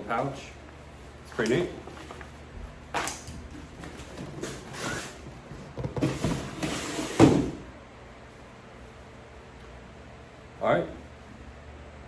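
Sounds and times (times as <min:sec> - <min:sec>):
packaging rustling and scraping: 0:03.0 - 0:07.5.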